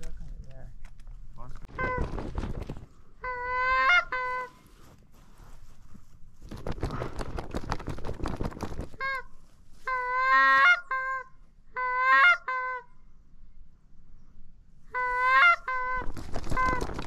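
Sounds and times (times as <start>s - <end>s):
dense crackling rustle: 0.0s - 3.1s, 4.4s - 10.0s, 16.0s - 17.0s
goose honking: 3.2s - 4.6s, 9.0s - 12.9s, 14.9s - 16.0s.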